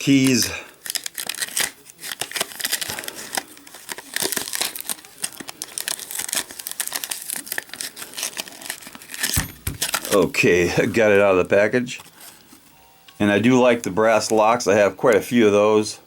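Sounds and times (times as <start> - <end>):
packaging crinkling and tearing: 0.2 - 10.3.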